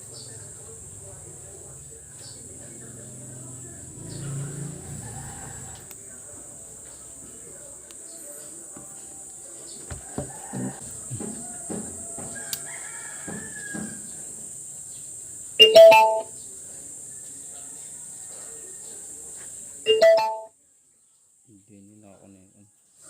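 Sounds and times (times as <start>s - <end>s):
light knocks and handling: 9.8s - 12.5s
short loud pitched chimes: 15.6s - 16.3s.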